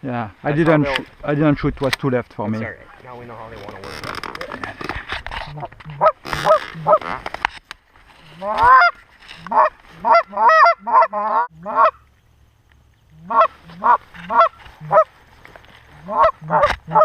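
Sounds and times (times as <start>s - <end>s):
goose honking: 5.5s - 7.2s, 8.4s - 12.0s, 13.2s - 15.1s, 15.9s - 17.0s.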